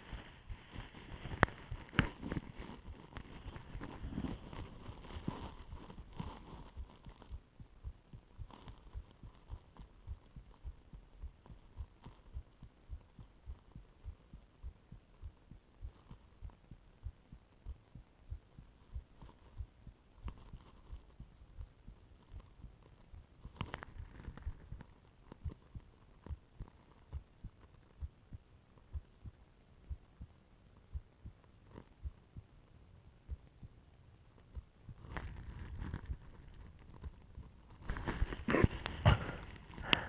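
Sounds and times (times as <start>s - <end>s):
rustling noise: 0.0s - 12.4s, 22.2s - 28.0s, 34.3s - 40.0s
heartbeat through stethoscope: 0.0s - 40.0s.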